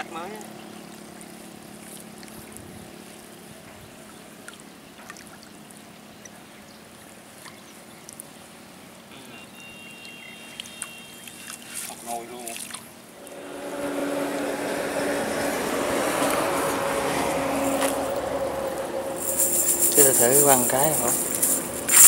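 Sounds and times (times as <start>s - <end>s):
small ticks and drips: 0.0s - 3.3s, 4.0s - 8.5s, 9.8s - 12.9s
water trickling and dribbling: 0.0s - 19.3s.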